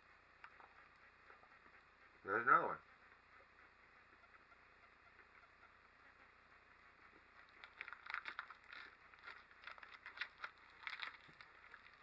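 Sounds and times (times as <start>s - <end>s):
chewing meat stick: 7.3s - 12.0s.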